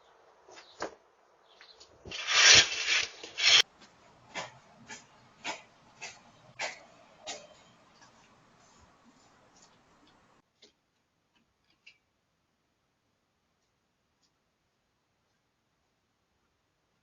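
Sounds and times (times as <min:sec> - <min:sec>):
loud scraping noise: 0:02.1 - 0:03.6.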